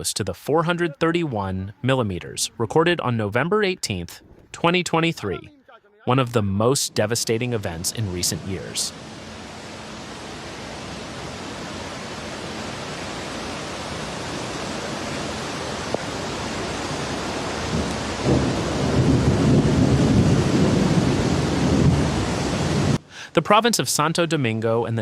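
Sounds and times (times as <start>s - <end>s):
heavy rain hiss: 6.1s - 25.0s
rolling thunder rumble: 16.0s - 23.0s.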